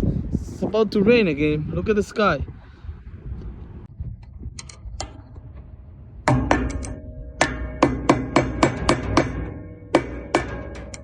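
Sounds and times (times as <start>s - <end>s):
plucked percussive background music: 6.3s - 11.0s.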